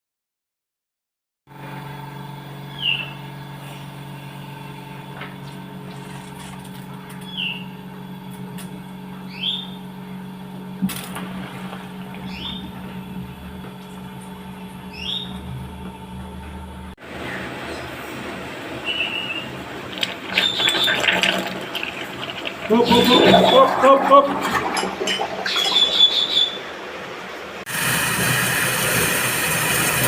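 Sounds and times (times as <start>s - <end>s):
low mechanical hum: 1.5s - 30.0s.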